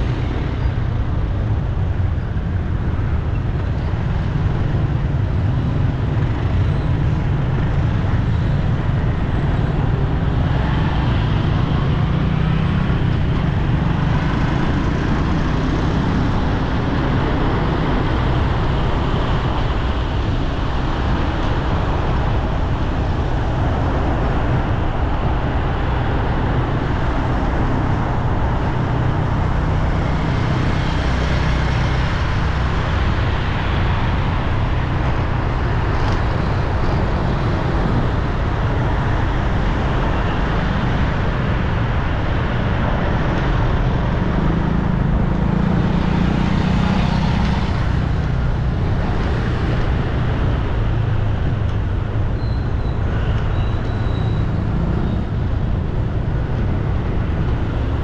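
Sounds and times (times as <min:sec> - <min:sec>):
road traffic rumble: 0:00.0 - 0:58.0.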